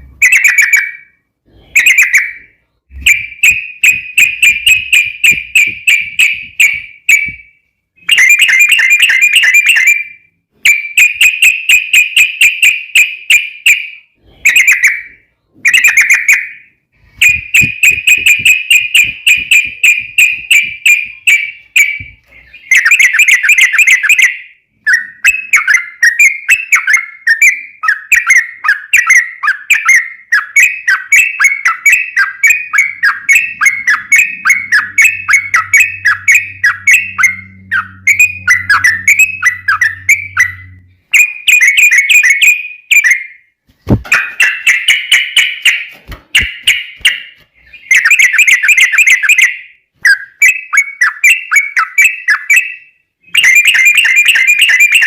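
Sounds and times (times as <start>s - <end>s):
bulbul singing bubbly chattering notes: 32.2s - 42.3s.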